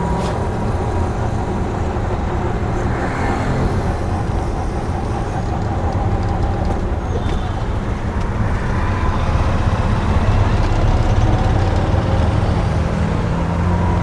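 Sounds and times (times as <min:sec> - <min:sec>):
vehicles passing: 0:00.0 - 0:14.0.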